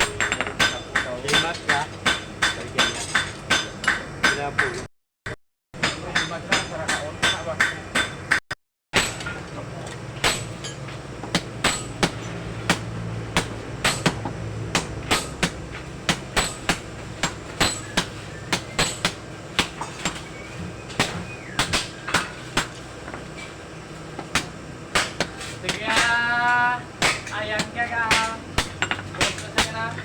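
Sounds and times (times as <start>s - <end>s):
hammer striking steel on anvil: 0.0s - 4.9s, 5.8s - 8.4s, 9.0s - 9.5s, 10.2s - 23.5s, 24.2s - 26.3s, 27.0s - 30.0s
steady low hum: 0.0s - 4.9s, 9.0s - 30.0s.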